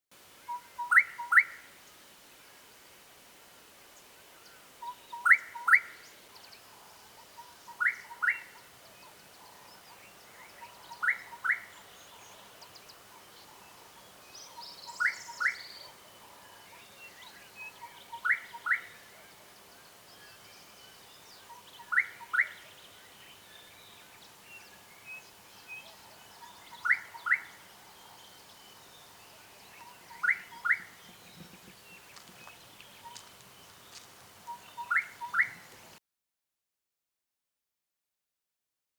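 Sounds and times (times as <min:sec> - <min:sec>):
bird whistled call: 0:00.5 - 0:01.6, 0:07.4 - 0:08.5, 0:14.8 - 0:15.9, 0:21.5 - 0:22.6, 0:26.4 - 0:27.6, 0:29.8 - 0:31.6, 0:34.5 - 0:35.6.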